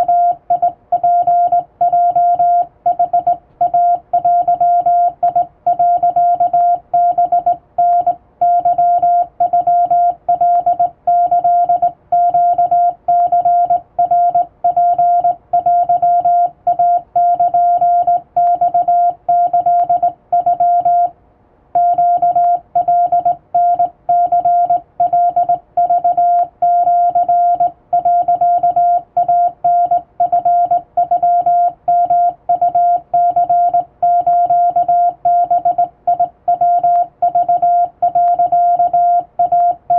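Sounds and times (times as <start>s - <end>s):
morse code beeps: 0.0s - 21.1s, 21.8s - 39.9s.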